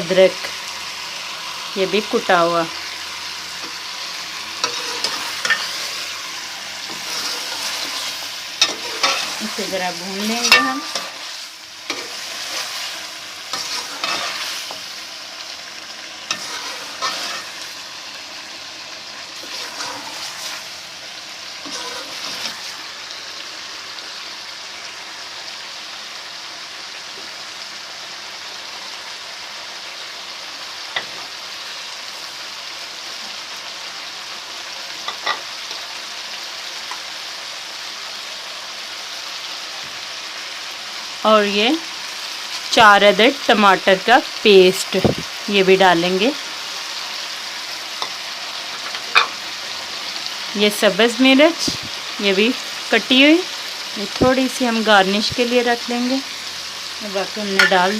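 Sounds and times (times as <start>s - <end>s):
food sizzling in oil: 0.0s - 57.9s
spoon scraping a pan: 3.5s - 15.0s, 16.2s - 17.8s, 19.4s - 20.8s, 21.6s - 22.8s, 47.9s - 50.3s.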